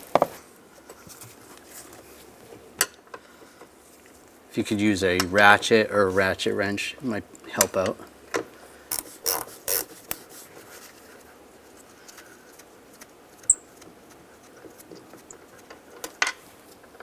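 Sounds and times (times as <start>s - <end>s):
faint scraping and ticking: 8.9s - 17.0s.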